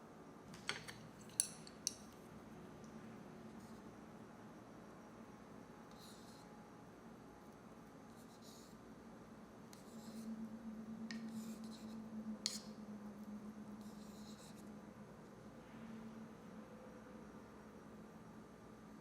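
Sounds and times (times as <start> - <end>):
low steady hum: 0.0 - 19.0
utensil scraping a dish: 11.1 - 12.7.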